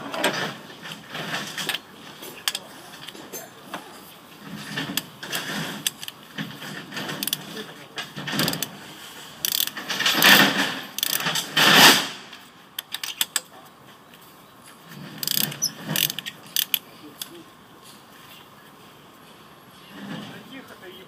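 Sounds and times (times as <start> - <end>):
socket ratchet clicking: 8.4 - 8.7, 9.4 - 10.4, 11.0 - 11.2, 15.2 - 16.8.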